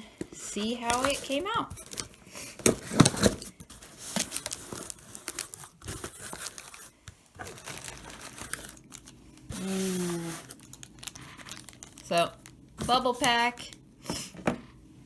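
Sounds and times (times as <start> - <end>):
packaging crinkling: 0.6 - 13.9
package being torn open: 7.4 - 12.6.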